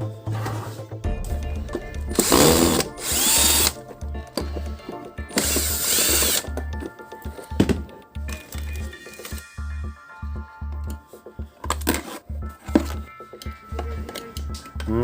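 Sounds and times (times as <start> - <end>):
background music with low beat: 0.0 - 15.0
power screwdriver running: 2.2 - 3.8, 5.3 - 6.5.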